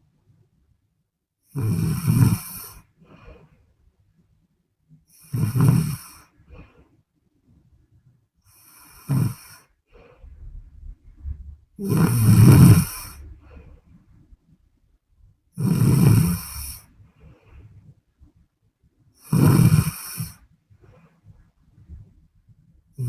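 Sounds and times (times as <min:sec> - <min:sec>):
woman snoring: 0:01.5 - 0:02.9, 0:05.2 - 0:06.3, 0:08.5 - 0:09.7, 0:11.8 - 0:13.2, 0:15.6 - 0:16.9, 0:19.2 - 0:20.4
faint short breath: 0:02.7 - 0:03.7, 0:13.0 - 0:14.0.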